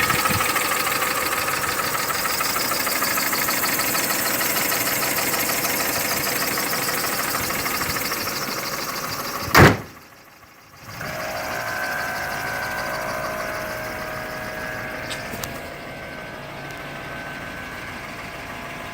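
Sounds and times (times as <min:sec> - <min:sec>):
engine running with a knock: 0:00.0 - 0:18.9
thin steady whine: 0:00.0 - 0:18.9
loud bang: 0:09.4 - 0:10.0.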